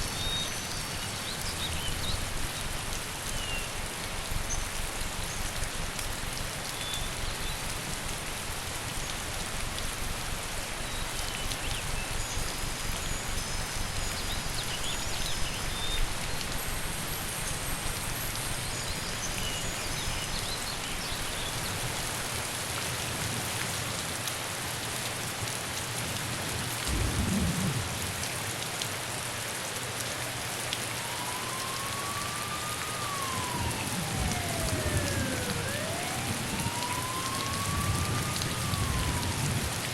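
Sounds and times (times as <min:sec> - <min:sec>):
steady rain on streets: 0:00.0 - 0:39.9
low rumble of thunder: 0:26.8 - 0:28.6, 0:31.0 - 0:39.9
siren wailing: 0:30.4 - 0:39.9.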